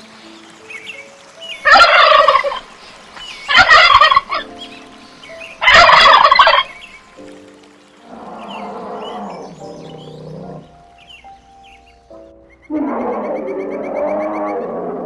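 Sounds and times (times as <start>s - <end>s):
faint background music: 0.0s - 15.0s
bird's rapid rattling call: 0.7s - 7.3s.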